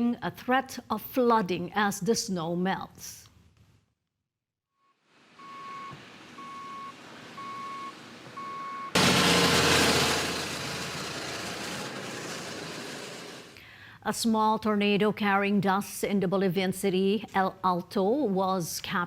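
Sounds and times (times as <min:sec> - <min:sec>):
outdoor hiss: 0:05.0 - 0:13.7
reversing alarm beeping: 0:05.4 - 0:09.0
loud rush of noise: 0:09.0 - 0:13.6.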